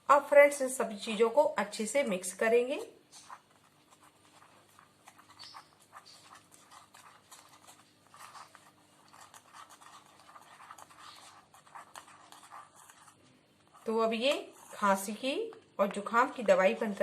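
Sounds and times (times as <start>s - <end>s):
spoon scraping and clicking: 3.1s - 13.2s.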